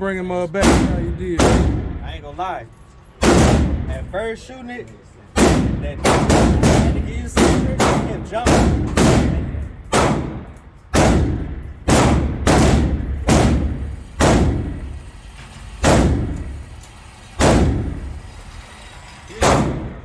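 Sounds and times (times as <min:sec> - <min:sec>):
gunshots with echo: 0:00.6 - 0:02.1, 0:03.2 - 0:04.0, 0:05.4 - 0:14.8, 0:15.8 - 0:16.6, 0:17.4 - 0:18.0, 0:19.4 - 0:20.0.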